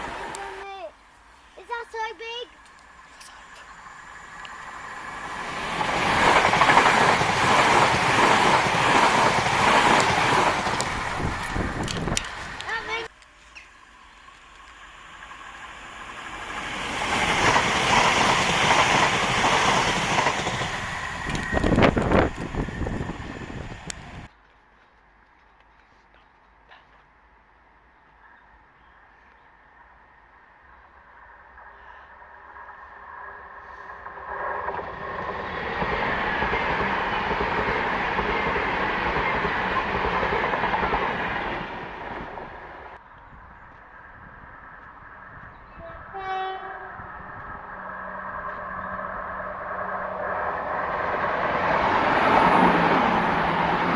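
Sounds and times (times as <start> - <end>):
train rumbling on rails: 0.0 - 24.3, 28.5 - 53.9
train wheels clattering: 4.3 - 24.3.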